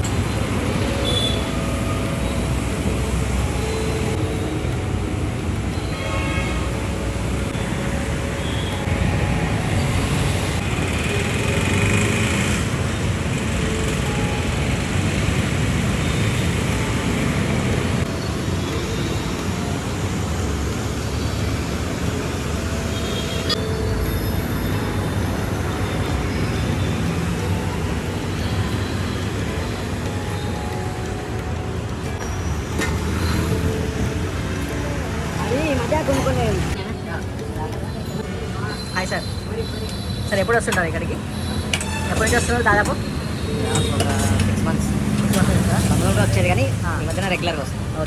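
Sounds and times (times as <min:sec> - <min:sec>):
passing traffic: 0:00.0 - 0:48.0.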